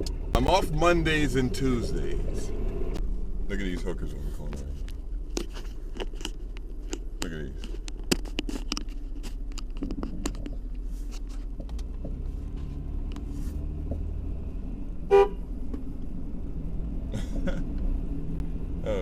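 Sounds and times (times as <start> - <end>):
car engine and road rumble: 0.0 - 19.0
short car horn toot: 15.1 - 15.4.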